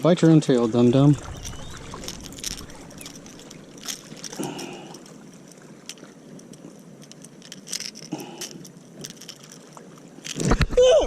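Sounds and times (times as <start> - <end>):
fish thrashing splashes: 0.7 - 5.8
fishing tackle clicking: 0.9 - 10.5.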